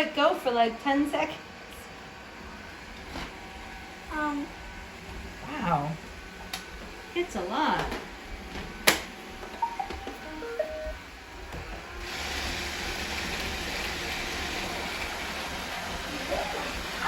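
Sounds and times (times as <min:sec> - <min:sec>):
electronic beep tune: 0:09.6 - 0:11.0
robot vacuum whirring: 0:11.3 - 0:17.0.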